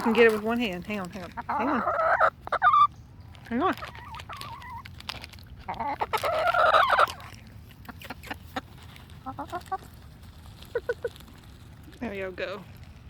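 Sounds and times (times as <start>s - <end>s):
chicken clucking: 0.0s - 3.0s, 3.6s - 4.9s, 5.6s - 11.5s
young chicken calling: 1.3s - 4.9s, 5.6s - 9.9s.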